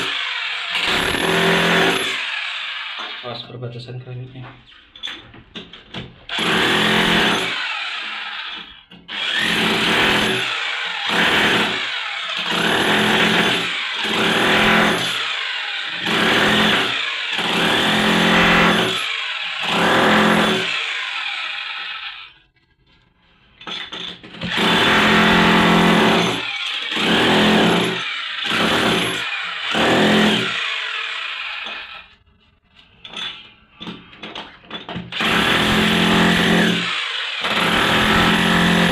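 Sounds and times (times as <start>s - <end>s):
power tool on tile floor: 0.0s - 3.4s, 6.2s - 22.6s, 23.4s - 32.3s, 32.9s - 38.9s.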